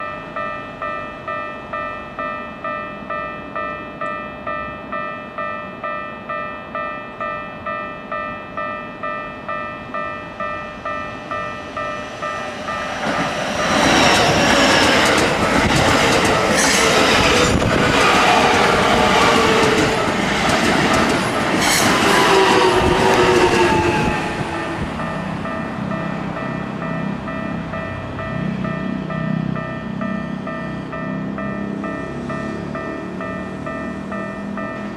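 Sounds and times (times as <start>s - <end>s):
falling train whine: 0.0s - 34.9s
rail joint clicks: 6.8s - 34.9s
train wheels on rails: 8.2s - 34.9s.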